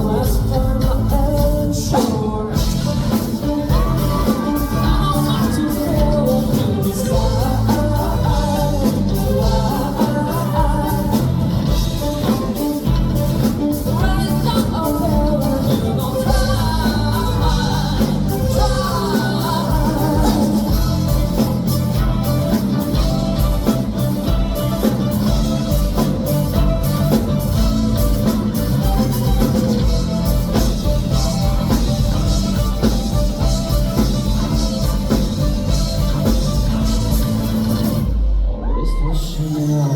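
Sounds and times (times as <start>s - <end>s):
live rock band: 0.0s - 39.9s
person singing: 0.0s - 39.9s.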